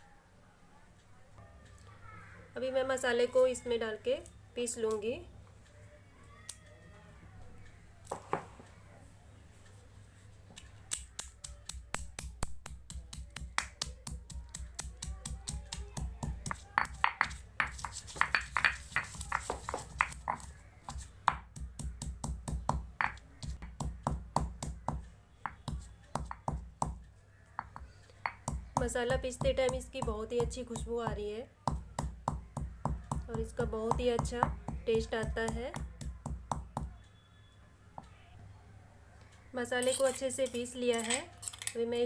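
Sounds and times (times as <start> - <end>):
pestle pounding spices in mortar: 11.7 - 27.0, 27.6 - 36.9.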